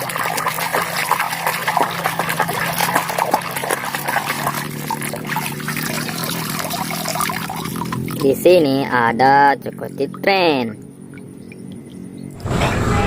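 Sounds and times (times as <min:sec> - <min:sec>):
water splashing and trickling: 0:00.0 - 0:12.3
steady low hum: 0:08.6 - 0:13.0.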